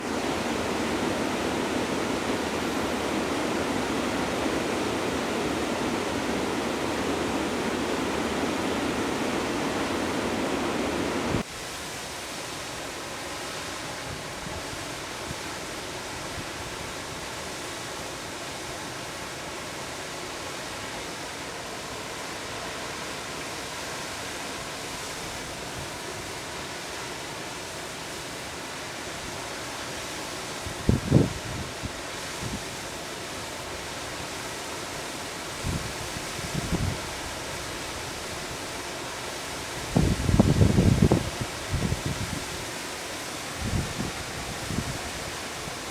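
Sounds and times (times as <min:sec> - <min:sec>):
river water rushing: 0:00.0 - 0:14.1, 0:17.1 - 0:45.9.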